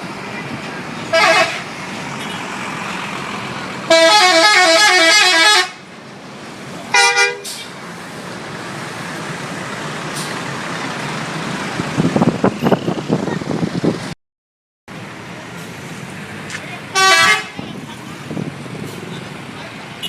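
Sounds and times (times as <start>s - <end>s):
road noise: 0.0s - 14.2s, 14.9s - 20.0s
multi-tone musical bus horn: 1.1s - 2.4s, 3.9s - 5.8s, 6.9s - 7.6s, 16.9s - 17.7s.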